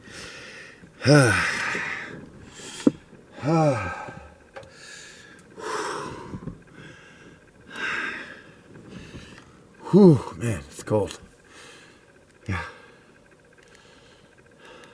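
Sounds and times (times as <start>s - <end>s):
man groaning: 1.0s - 2.1s, 3.3s - 4.4s, 9.8s - 10.4s, 12.4s - 12.9s.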